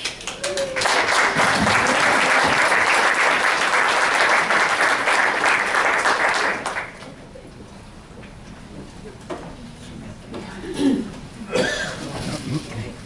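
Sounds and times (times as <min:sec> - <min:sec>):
audience applauding: 0:00.0 - 0:07.0.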